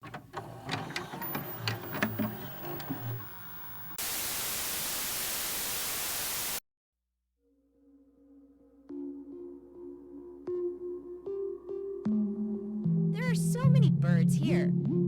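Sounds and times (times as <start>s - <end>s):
white-noise static: 1.4s - 6.6s.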